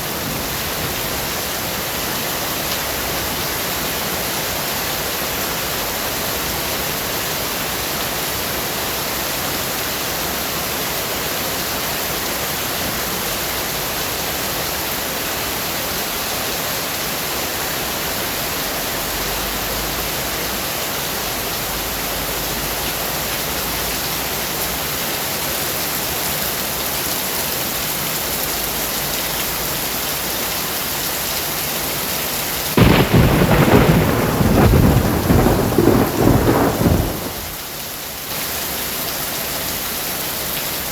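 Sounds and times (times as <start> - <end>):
steady rain hiss: 0.0 - 40.9
rumbling thunderclap: 32.8 - 37.6.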